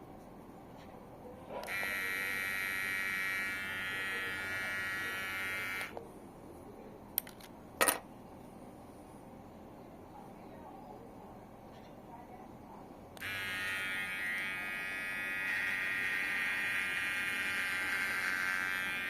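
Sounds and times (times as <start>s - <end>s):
electric hair clipper buzzing: 1.6s - 6.0s, 13.2s - 19.0s.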